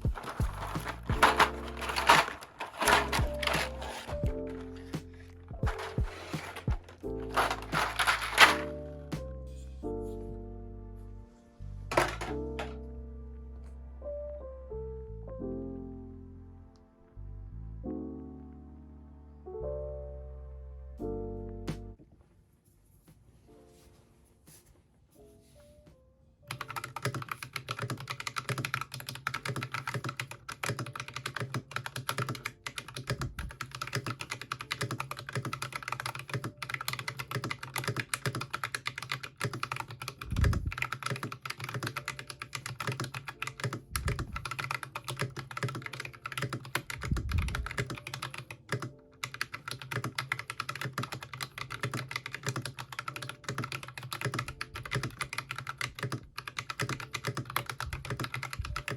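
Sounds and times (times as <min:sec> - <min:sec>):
mechanical keyboard typing: 0:00.0 - 0:08.8, 0:11.9 - 0:12.8, 0:26.5 - 0:58.9.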